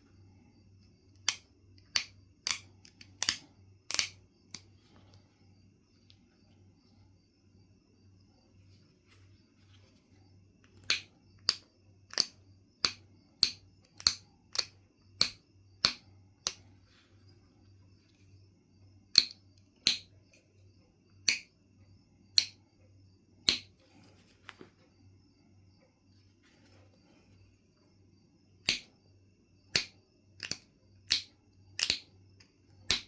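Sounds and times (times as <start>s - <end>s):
flint knapping clicks: 1.2s - 4.7s, 10.6s - 16.6s, 19.1s - 20.1s, 28.6s - 28.9s, 29.7s - 32.1s.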